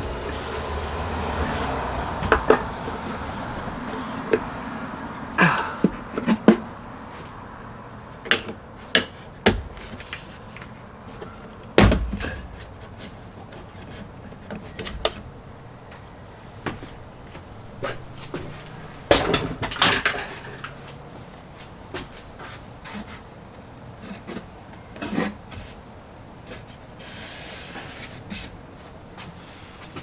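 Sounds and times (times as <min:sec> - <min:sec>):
steady low noise: 0:00.0 - 0:03.9
hands knocking tools and parts: 0:02.2 - 0:03.2.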